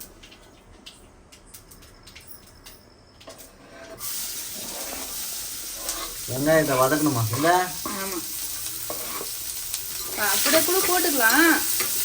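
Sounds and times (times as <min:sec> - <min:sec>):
onion sizzling in hot oil: 0:04.0 - 0:12.0.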